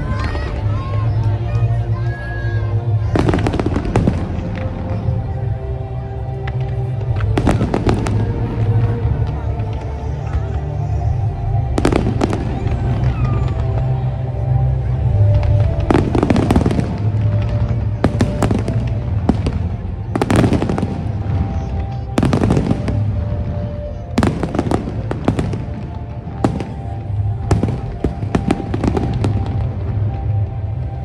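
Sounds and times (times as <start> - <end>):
fireworks crackling: 0.0 - 31.0
music with steady bass: 0.0 - 31.0
fireworks bangs: 3.0 - 5.4, 15.0 - 30.5.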